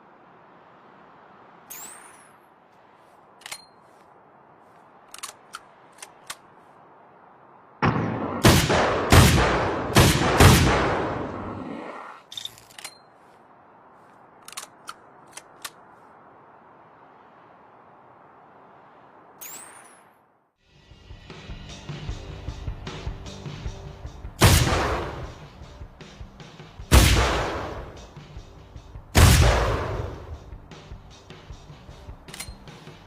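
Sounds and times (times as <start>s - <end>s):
rifle shots echoing: 7.8s - 11.8s, 24.4s - 25.4s, 26.9s - 28.0s, 29.2s - 30.3s
faint clicks: 14.0s - 16.1s.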